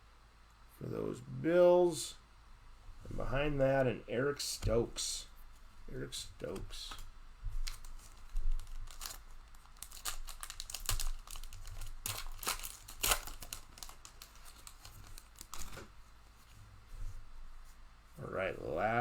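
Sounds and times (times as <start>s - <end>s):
plastic wrapper crackling and tearing: 6.9s - 15.9s.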